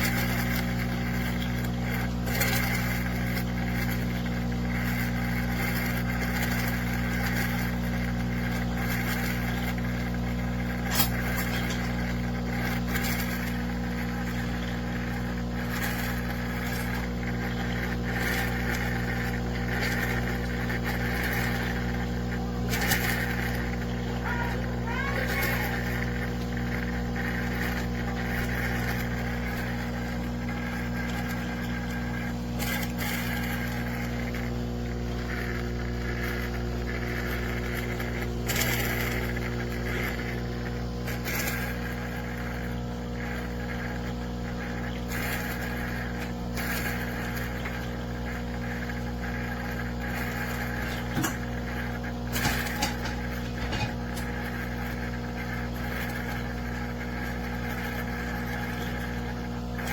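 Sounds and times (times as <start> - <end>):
low machine hum: 0.0 - 59.9.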